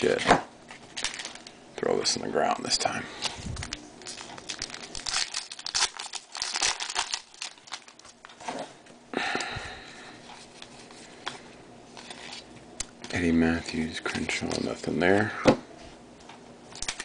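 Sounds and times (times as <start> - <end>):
foil wrapper tearing and crinkling: 0.9 - 1.6, 3.6 - 8.3, 16.8 - 17.0.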